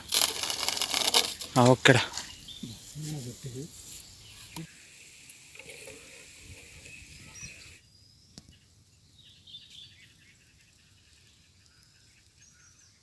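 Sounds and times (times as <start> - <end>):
light hiss: 0.0 - 8.9.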